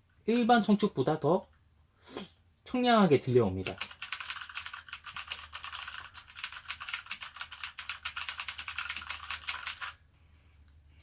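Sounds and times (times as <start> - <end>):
fast typing on clicky keyboard: 3.6 - 10.0.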